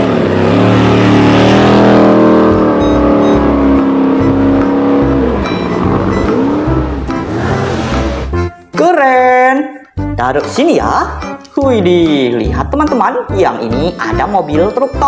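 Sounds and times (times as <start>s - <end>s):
vehicle engine revving: 0.0s - 8.5s.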